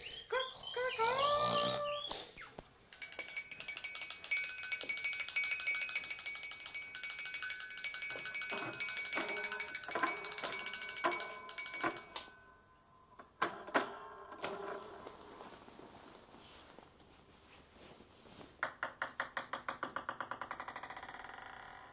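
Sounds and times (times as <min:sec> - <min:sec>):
metal bell ringing: 0:00.3 - 0:13.0.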